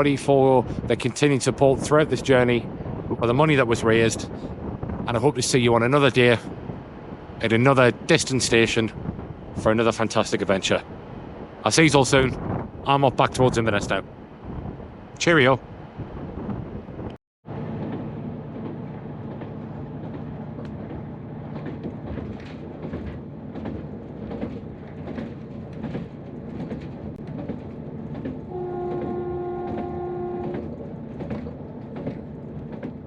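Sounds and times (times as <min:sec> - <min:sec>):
rail clicks: 0:00.0 - 0:33.0
train rumbling on track: 0:00.0 - 0:33.0
train horn: 0:28.5 - 0:30.7.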